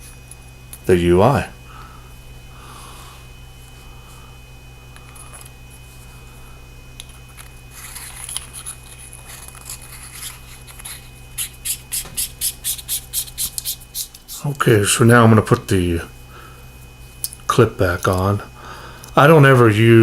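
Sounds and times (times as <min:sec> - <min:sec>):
low steady hum: 0:00.0 - 0:20.0
flashlight threads scraping: 0:07.0 - 0:14.4.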